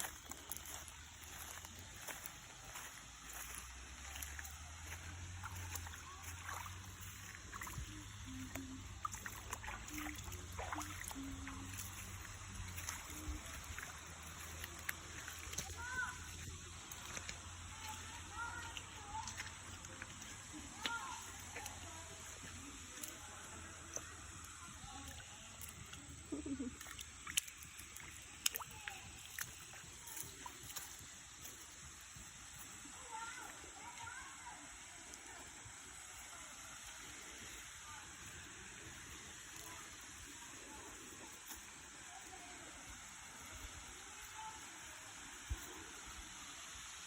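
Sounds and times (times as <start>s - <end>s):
water rushing from waterfall: 27.0s - 47.0s.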